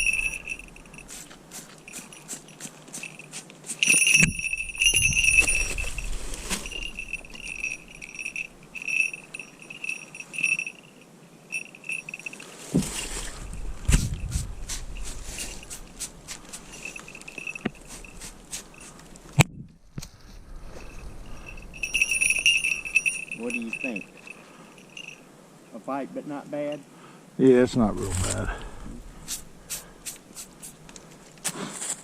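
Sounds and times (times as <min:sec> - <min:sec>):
small bell jingling: 0:00.0 - 0:12.6, 0:13.3 - 0:19.1, 0:20.6 - 0:25.3.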